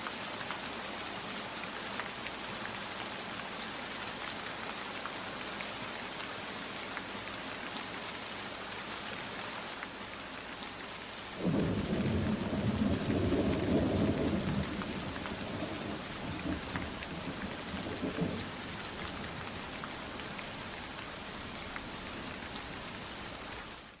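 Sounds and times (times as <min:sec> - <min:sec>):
rain falling: 0:00.0 - 0:24.0
thunder rumbling: 0:11.4 - 0:18.6.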